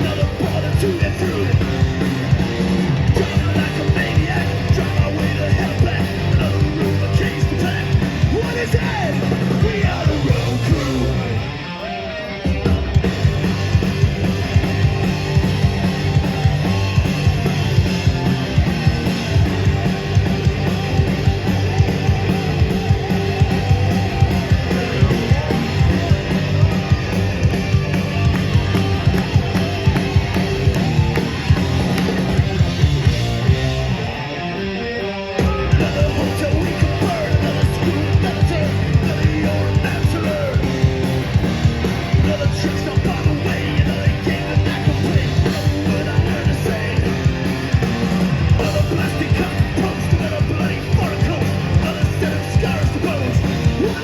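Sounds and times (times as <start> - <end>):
bass guitar: 0.0 - 54.0
distorted electric guitars: 0.0 - 54.0
driving drums: 0.0 - 54.0.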